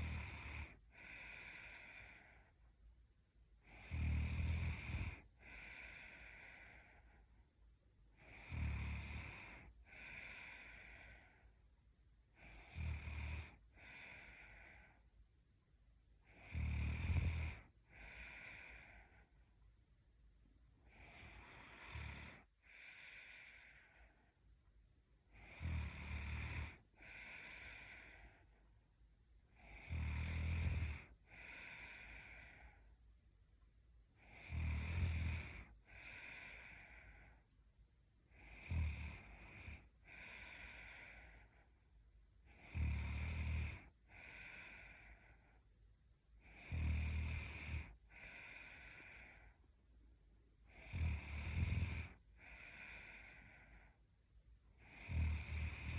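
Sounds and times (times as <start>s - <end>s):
woman snoring: 0.0s - 2.5s, 3.6s - 7.2s, 8.2s - 11.4s, 12.3s - 14.9s, 16.2s - 19.3s, 20.8s - 24.3s, 25.3s - 28.6s, 29.5s - 32.9s, 34.2s - 37.4s, 38.3s - 41.7s, 42.4s - 45.6s, 46.4s - 49.6s, 50.6s - 53.9s, 54.7s - 55.9s
soft breath: 0.0s - 2.8s, 5.1s - 8.3s, 9.2s - 16.5s, 17.5s - 29.8s, 30.9s - 33.8s, 35.4s - 42.6s, 43.7s - 46.7s, 47.4s - 50.9s, 51.7s - 55.0s.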